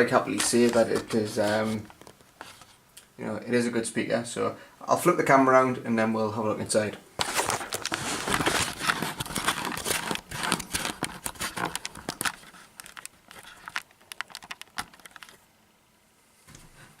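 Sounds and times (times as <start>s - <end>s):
camera handling rustling: 0.3s - 2.8s, 7.2s - 15.4s
small clicks and knocks: 7.5s - 15.4s.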